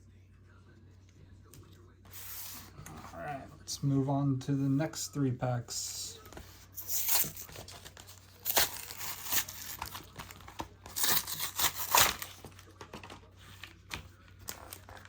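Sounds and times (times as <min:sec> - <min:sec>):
card pack packaging crinkling: 0:06.8 - 0:13.1.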